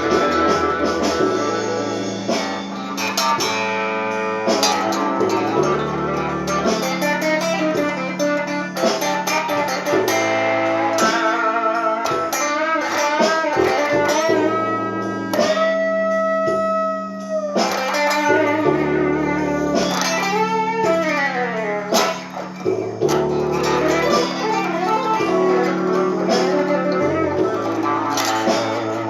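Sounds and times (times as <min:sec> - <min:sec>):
steady low bass notes: 0:00.0 - 0:08.4, 0:18.3 - 0:29.0
blues guitar with string bends: 0:00.0 - 0:29.0.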